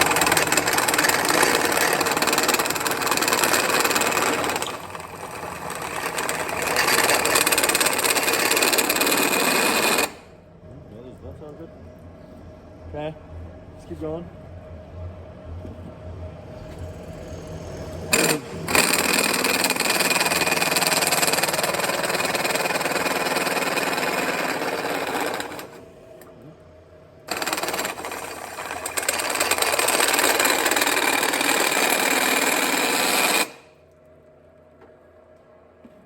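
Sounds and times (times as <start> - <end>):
drill cutting through steel: 0.0 - 10.3, 18.1 - 25.8, 27.3 - 33.8.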